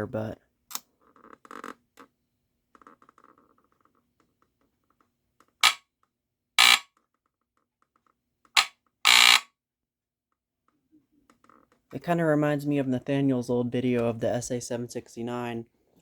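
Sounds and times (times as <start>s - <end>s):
smoke detector chirps: 6.6s - 6.8s, 8.6s - 9.4s.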